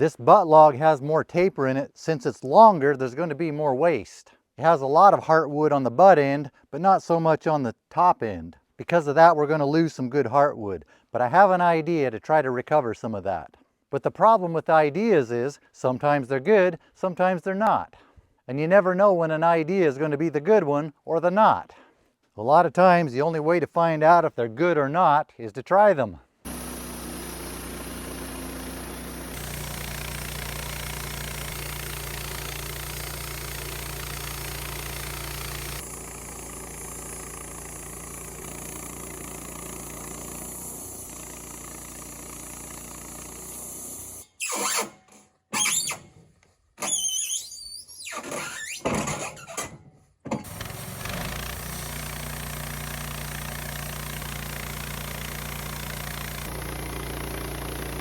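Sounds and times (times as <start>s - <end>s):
bandsaw cutting log: 26.5s - 49.8s, 50.4s - 58.0s.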